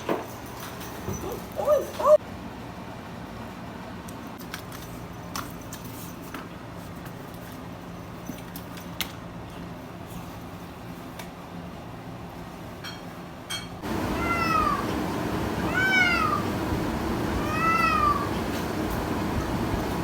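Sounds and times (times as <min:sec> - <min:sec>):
cat meowing: 0:13.9 - 0:15.0, 0:15.6 - 0:16.6, 0:17.3 - 0:18.4.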